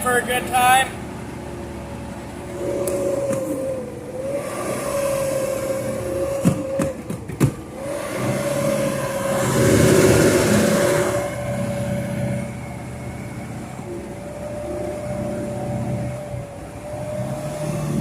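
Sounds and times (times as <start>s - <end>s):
car engine at high revs: 0.0s - 18.0s.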